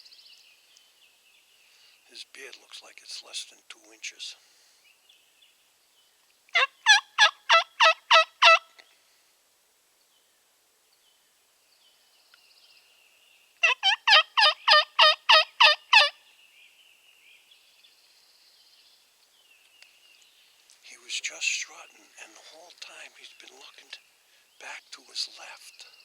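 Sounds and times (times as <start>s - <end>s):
faint birdsong: 0.0s - 26.0s
turkey yelping: 6.6s - 8.7s, 13.6s - 16.2s.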